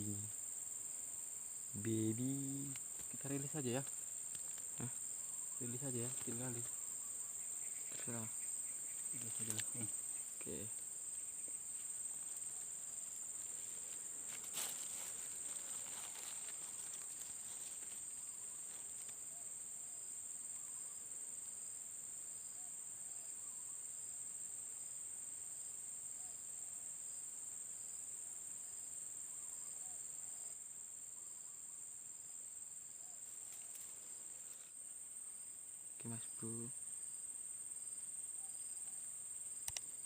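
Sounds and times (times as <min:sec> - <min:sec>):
insects droning: 0:00.0 - 0:40.0
sharp click: 0:39.6 - 0:40.0.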